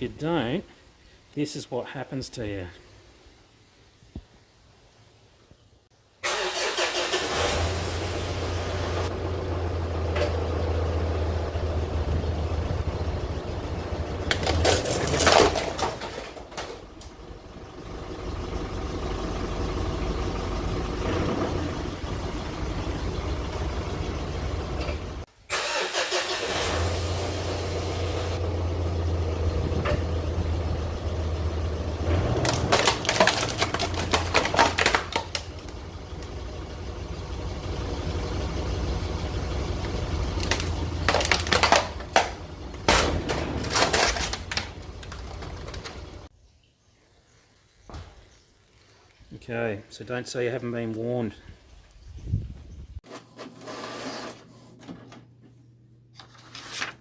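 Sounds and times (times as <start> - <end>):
vehicle engine humming: 7.4 - 25.3, 26.5 - 46.3
printer being crushed: 14.3 - 16.7, 32.4 - 35.6, 40.4 - 46.1.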